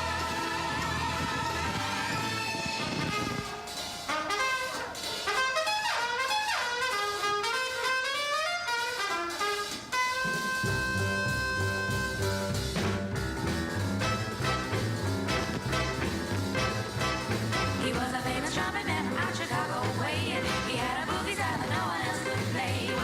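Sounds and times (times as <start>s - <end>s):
trumpet runs: 0.0s - 13.1s, 14.0s - 18.3s
jazzy brass band music: 0.0s - 23.0s
swing beat with bass: 9.1s - 23.0s.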